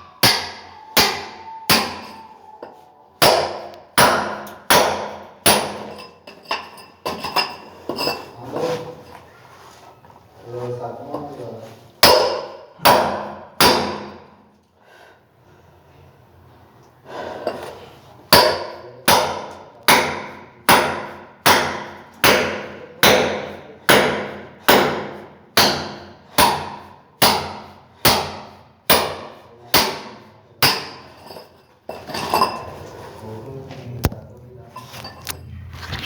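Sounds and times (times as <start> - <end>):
hammer blows ringing: 0.1 - 6.1, 12.0 - 14.3, 18.3 - 31.0.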